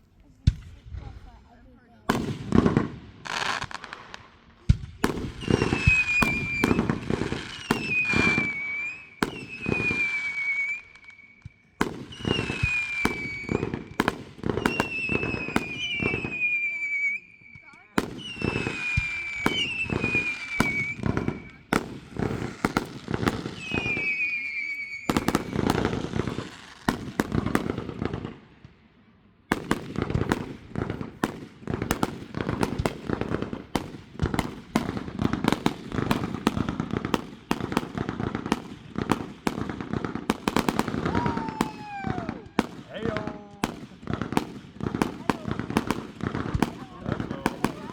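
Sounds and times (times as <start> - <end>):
fireworks crackling and banging: 0.0 - 28.9, 29.5 - 47.9
firework whistles: 5.3 - 26.9, 40.7 - 42.4.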